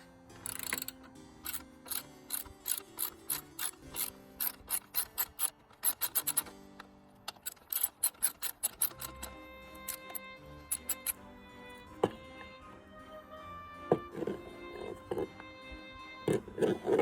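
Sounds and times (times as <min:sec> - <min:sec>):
hand ratchet clicking: 0:00.0 - 0:11.2
faint music: 0:00.0 - 0:17.0.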